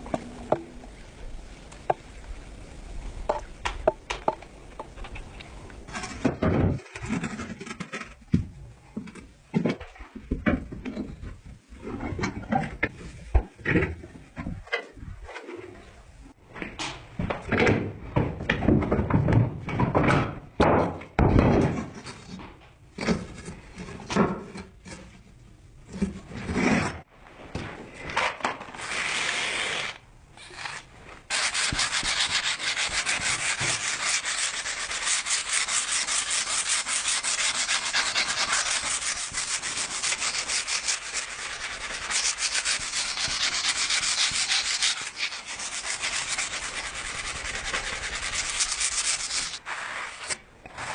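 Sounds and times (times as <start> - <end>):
sanding a knife: 30.5 - 50.9.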